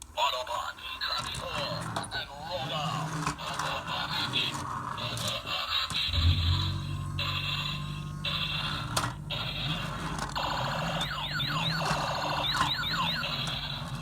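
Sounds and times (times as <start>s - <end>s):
buzzy toy sound: 0.8s - 14.0s
steady low hum: 4.2s - 14.0s
falling siren-like toy chirps: 11.0s - 14.0s.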